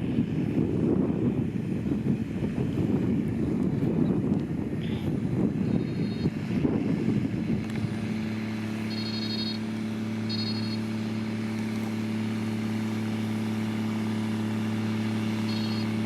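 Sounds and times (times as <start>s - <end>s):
diesel engine running: 0.0s - 16.0s
backup alarm beeps: 5.9s - 6.3s, 8.9s - 9.6s, 10.3s - 10.8s, 15.4s - 15.9s.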